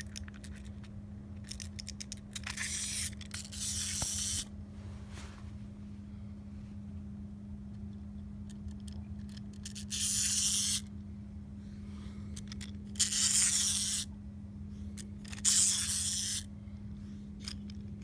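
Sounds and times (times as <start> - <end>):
steady low hum: 0.0 - 18.0
hissy scraping of wind-up toy: 2.4 - 4.5, 9.5 - 10.9, 12.4 - 14.1, 15.2 - 16.5.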